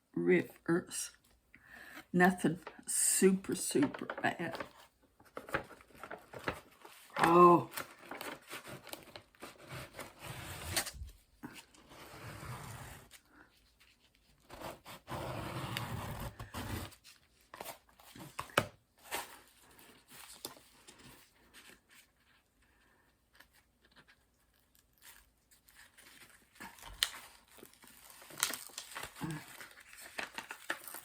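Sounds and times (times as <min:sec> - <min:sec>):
paper and plastic film rustling: 0:02.5 - 0:11.1, 0:23.4 - 0:31.0.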